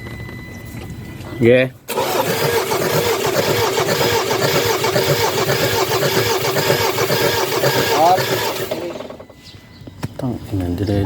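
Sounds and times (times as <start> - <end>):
starter motor cranking engine: 1.9 - 9.3.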